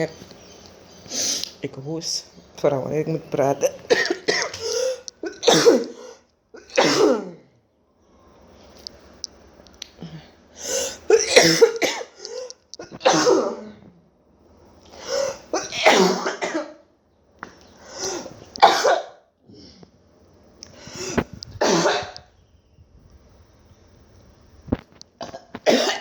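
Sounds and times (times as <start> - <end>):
person coughing: 3.9 - 7.5, 10.0 - 13.8, 15.0 - 16.8, 18.0 - 19.2, 21.0 - 22.2, 25.2 - 26.0.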